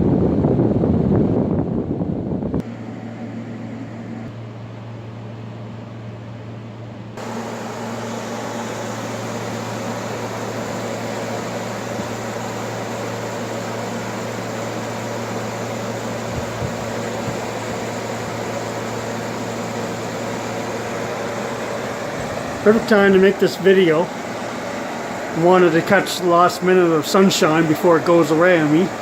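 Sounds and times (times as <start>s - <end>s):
compressor low hum: 0.0s - 29.0s
fan air rushing: 0.0s - 29.0s.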